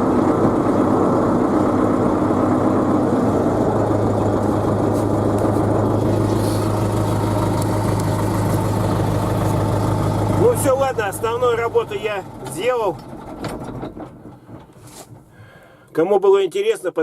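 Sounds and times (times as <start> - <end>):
low hum: 0.0 - 15.5
tractor engine idling: 0.0 - 15.8.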